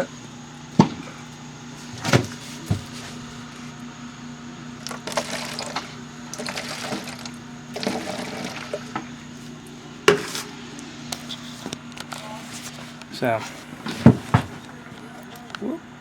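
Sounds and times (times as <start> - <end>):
generator humming: 0.0 - 16.0
gasoline pouring: 4.8 - 9.2.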